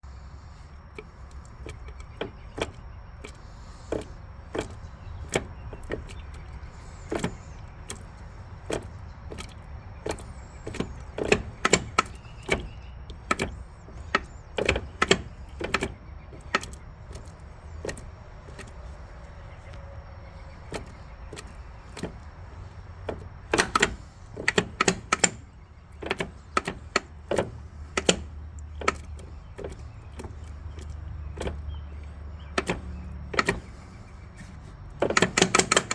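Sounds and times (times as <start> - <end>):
axle locker banging and popping: 1.0 - 19.0, 20.6 - 35.9.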